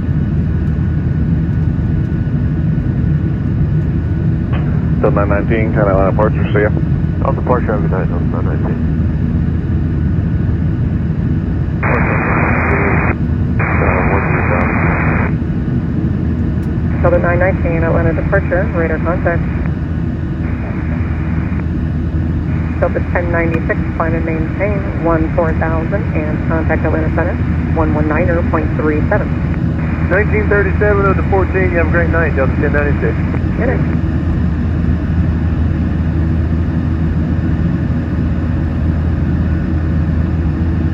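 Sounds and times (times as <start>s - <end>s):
airplane cabin rumble: 0.0s - 40.9s
garbled radio voice: 5.0s - 8.8s, 11.8s - 15.3s, 16.9s - 19.6s, 22.5s - 34.0s
radio static bursts: 11.8s - 15.4s, 20.5s - 21.6s, 22.5s - 34.0s.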